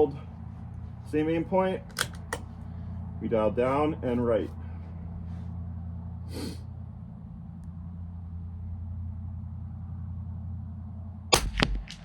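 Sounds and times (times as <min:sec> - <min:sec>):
steady low hum: 0:00.0 - 0:12.0
rifle shot: 0:11.3 - 0:12.0.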